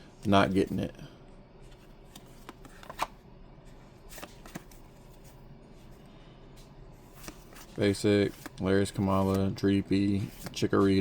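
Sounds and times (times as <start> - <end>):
trading cards rustling: 1.7 - 3.2, 3.8 - 11.0.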